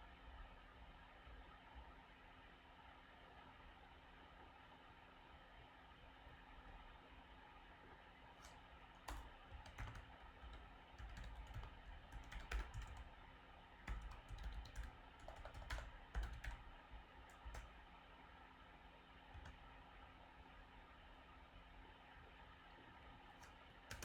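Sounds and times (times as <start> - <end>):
low steady hum: 0.0 - 24.0
typing on computer keyboard: 8.4 - 13.2, 13.8 - 17.8, 19.3 - 19.6, 23.4 - 24.0.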